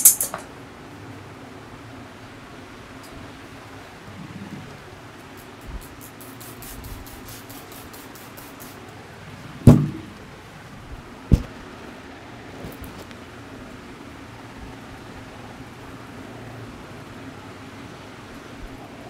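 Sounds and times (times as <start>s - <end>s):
rapid tapping on head: 5.3s - 8.8s.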